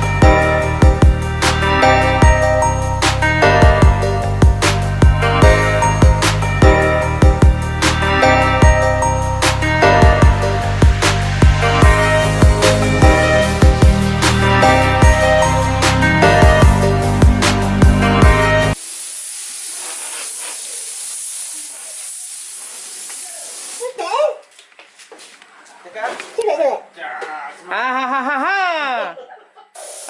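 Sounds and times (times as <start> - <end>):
sustained synth chords: 0.2 - 18.8
deep kick drum beat: 3.4 - 7.6, 9.9 - 14.4, 16.2 - 18.5.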